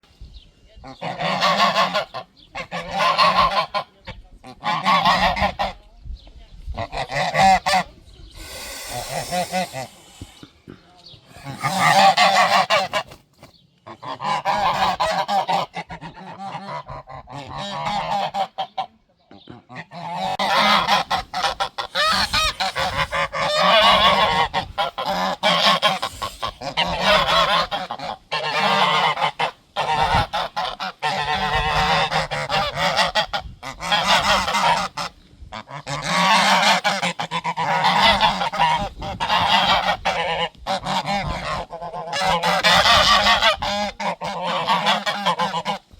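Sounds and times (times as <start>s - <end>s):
geese honking: 0.8s - 5.8s, 6.8s - 10.4s, 11.3s - 13.2s, 13.9s - 45.9s.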